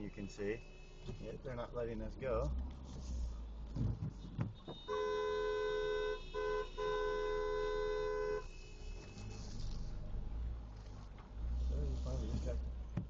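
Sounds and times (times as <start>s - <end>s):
two-tone car horn honking: 0.0s - 1.4s, 4.6s - 9.7s.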